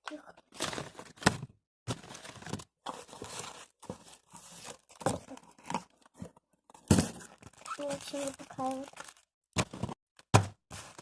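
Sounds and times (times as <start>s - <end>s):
packing paper rustling and tearing: 6.9s - 9.3s, 10.7s - 11.0s.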